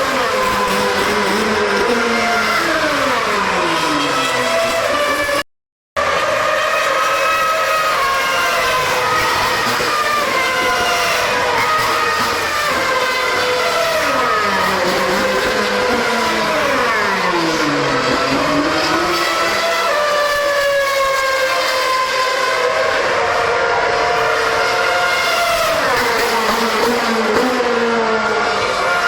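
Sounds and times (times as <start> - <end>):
racing car engines revving: 0.0 - 5.4, 6.0 - 29.0.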